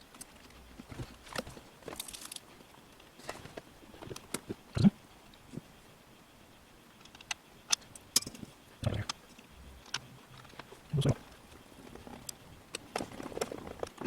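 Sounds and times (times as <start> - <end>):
screws and small parts clicking: 1.2 - 3.1, 6.9 - 11.0.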